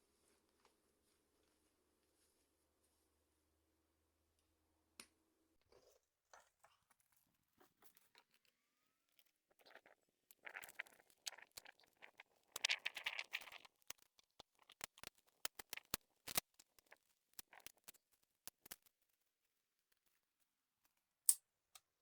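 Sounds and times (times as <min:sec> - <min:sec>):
sharp clicks and taps: 0:12.6 - 0:18.9.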